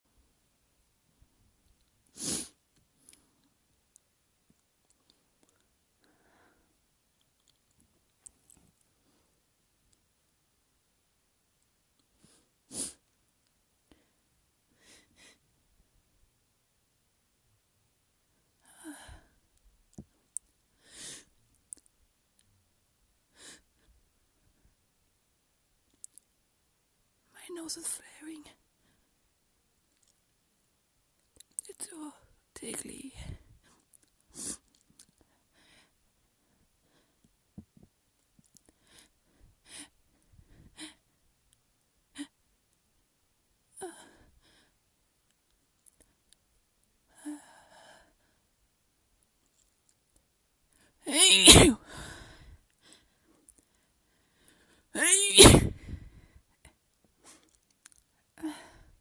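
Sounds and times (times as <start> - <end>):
person sniffing and breathing: 2.1 - 2.6, 12.2 - 13.0, 20.8 - 21.3
person breathing: 6.0 - 6.8, 20.8 - 21.3, 51.8 - 54.9, 55.7 - 56.4
gasping in-breath: 51.8 - 53.2.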